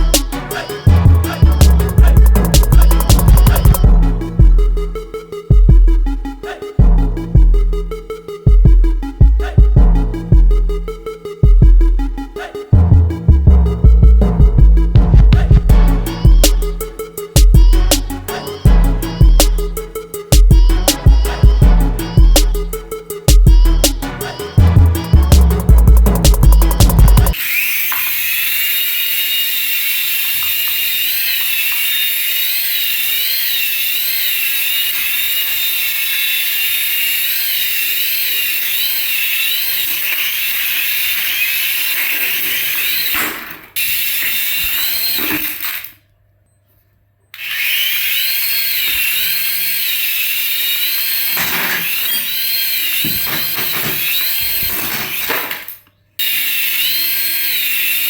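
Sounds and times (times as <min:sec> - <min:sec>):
small electric motor whining: 0:00.0 - 0:03.9, 0:26.5 - 0:45.9, 0:47.4 - 0:55.4, 0:56.2 - 0:58.0.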